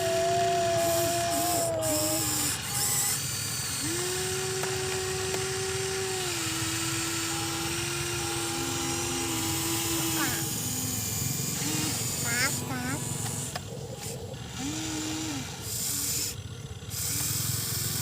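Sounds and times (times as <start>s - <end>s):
electric gear motors whining: 0.0s - 18.0s.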